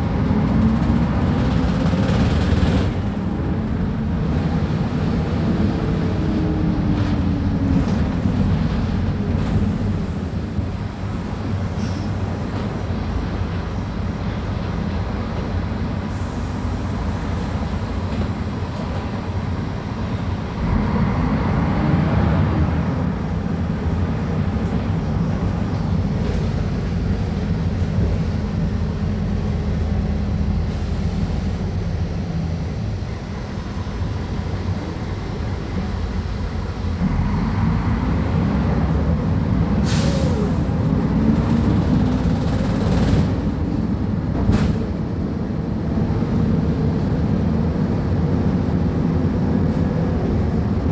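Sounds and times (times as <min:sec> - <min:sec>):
bus diesel engine running: 0:00.0 - 0:50.9
brief air hiss: 0:39.8 - 0:40.5.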